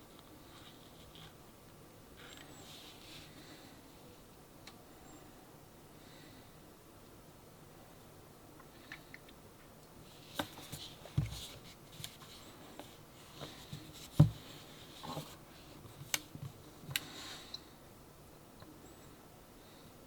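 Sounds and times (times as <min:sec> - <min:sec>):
soft thumps: 0:13.7 - 0:14.5.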